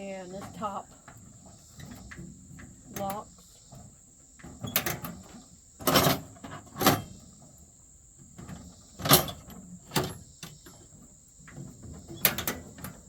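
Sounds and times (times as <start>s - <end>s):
toolbox lid and lock clanking: 5.8s - 7.2s.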